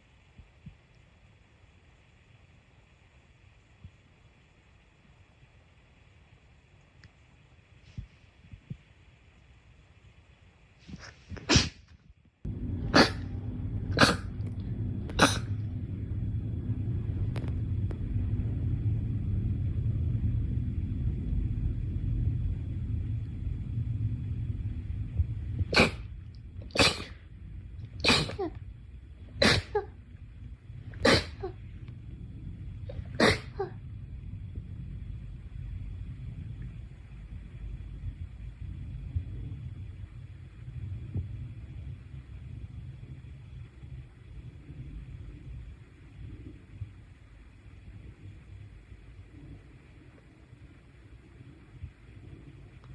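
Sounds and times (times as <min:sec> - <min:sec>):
steady low rumble: 0:00.0 - 0:52.9
short sharp sneezes: 0:11.0 - 0:11.8, 0:25.8 - 0:26.0, 0:26.8 - 0:27.1, 0:28.0 - 0:28.5, 0:29.4 - 0:29.8, 0:31.0 - 0:31.5.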